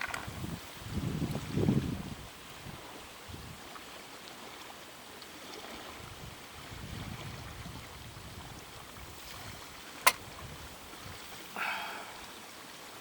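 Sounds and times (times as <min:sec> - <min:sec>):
wind gusts buffeting microphone: 0:00.0 - 0:03.7, 0:05.8 - 0:12.3
lake water: 0:00.0 - 0:13.0.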